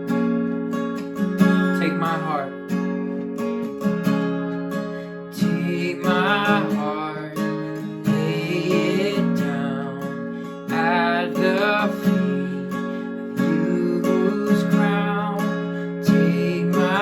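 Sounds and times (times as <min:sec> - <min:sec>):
acoustic guitar strumming: 0:00.0 - 0:17.0
person singing: 0:01.5 - 0:02.6, 0:05.4 - 0:17.0.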